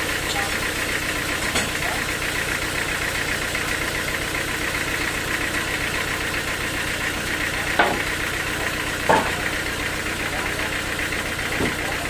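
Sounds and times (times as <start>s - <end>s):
sawmill engine chugging: 0.0s - 12.0s.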